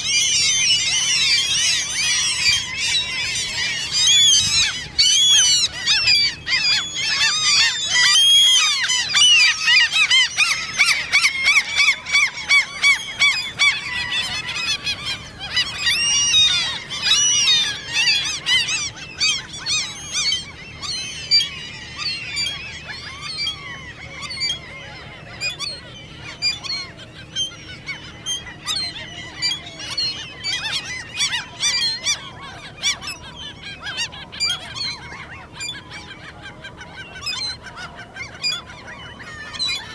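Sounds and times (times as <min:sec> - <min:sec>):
gulls squeaky begging calls: 0:00.0 - 0:39.9.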